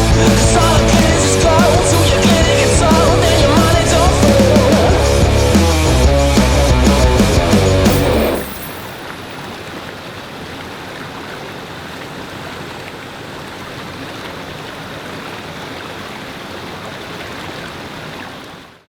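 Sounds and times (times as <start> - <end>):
river water rushing over stones: 7.9 - 18.7.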